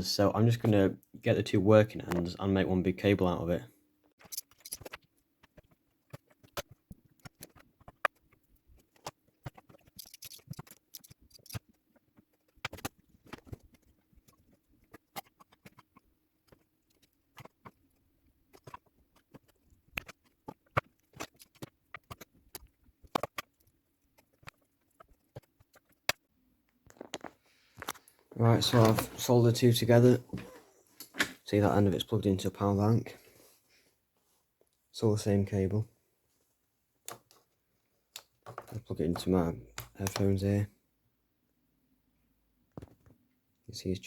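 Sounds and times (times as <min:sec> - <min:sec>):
hands handling cables clicking: 0:04.2 - 0:17.8, 0:18.5 - 0:29.2, 0:38.1 - 0:40.4.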